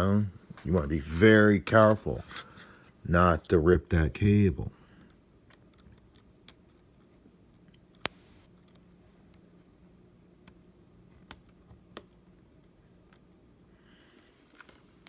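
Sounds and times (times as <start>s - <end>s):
faint low hum: 0.0s - 15.0s
small tools clicking on phone: 5.0s - 9.5s, 10.4s - 13.3s.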